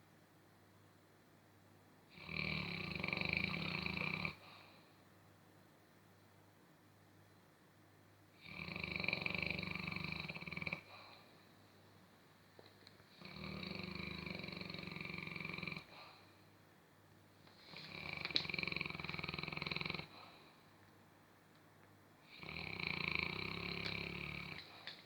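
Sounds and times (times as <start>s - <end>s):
dog snoring: 2.1s - 4.5s, 8.4s - 11.2s, 13.1s - 16.2s, 17.6s - 20.4s, 22.2s - 25.0s.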